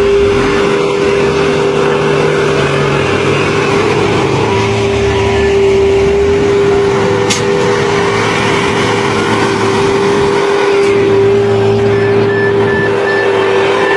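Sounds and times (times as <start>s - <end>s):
constant whine: 0.0s - 13.9s
construction machinery engine: 0.0s - 13.9s.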